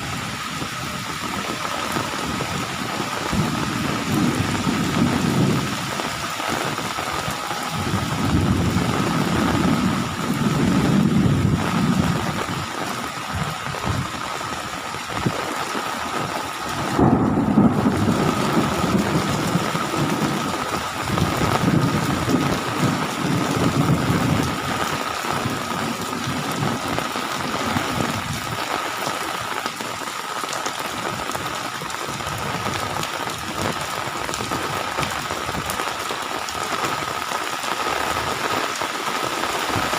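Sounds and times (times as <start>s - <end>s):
heavy rain pouring: 0.0s - 39.9s
low rolling thunder: 1.2s - 15.5s, 16.1s - 28.6s.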